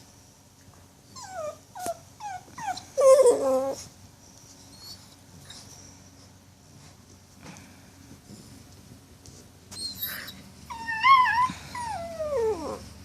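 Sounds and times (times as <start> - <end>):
puppy whining: 1.1 - 6.2, 9.7 - 13.0.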